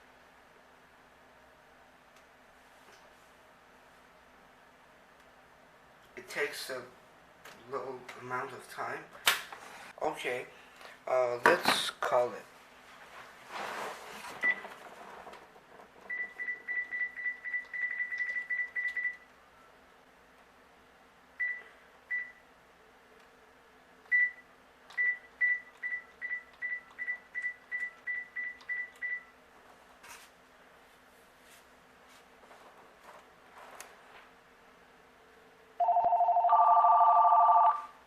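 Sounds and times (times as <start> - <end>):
telephone keypad beeps: 35.8 - 37.9.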